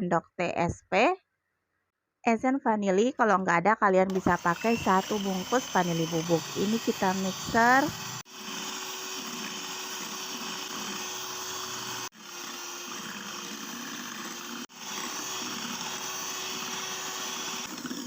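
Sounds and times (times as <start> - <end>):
electric mixer beating batter: 4.1 - 18.0.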